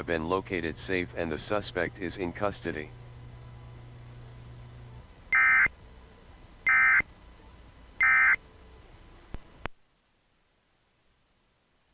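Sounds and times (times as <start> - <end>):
digital data tone bursts: 5.3 - 5.7, 6.7 - 7.0, 8.0 - 8.4.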